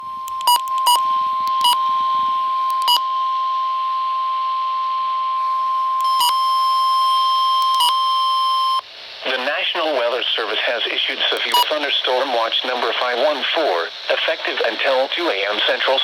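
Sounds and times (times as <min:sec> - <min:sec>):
high steady alarm tone: 0:00.0 - 0:08.8.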